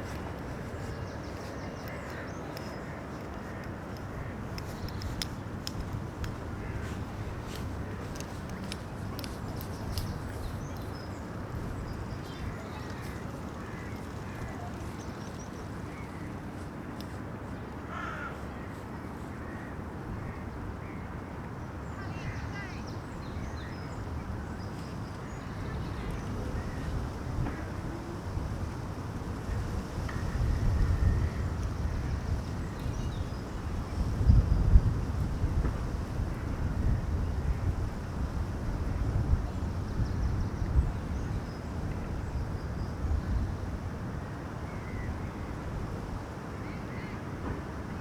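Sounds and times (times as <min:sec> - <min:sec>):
wind rumbling on microphone: 0:00.0 - 0:16.9, 0:21.6 - 0:48.0.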